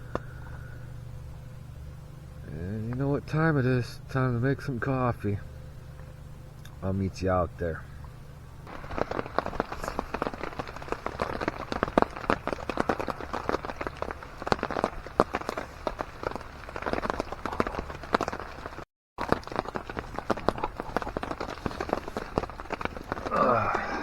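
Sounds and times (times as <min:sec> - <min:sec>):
tent fabric rustling: 0:08.6 - 0:24.0.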